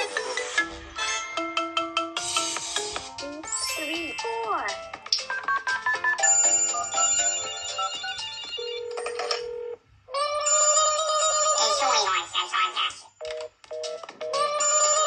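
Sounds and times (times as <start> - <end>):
electronic alarm melody: 3.6 - 9.2.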